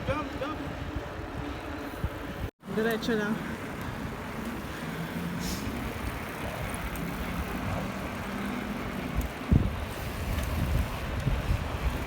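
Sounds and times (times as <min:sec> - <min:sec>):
wind noise on microphone: 0:00.0 - 0:02.5, 0:05.3 - 0:12.0
road traffic rumble: 0:00.0 - 0:12.0.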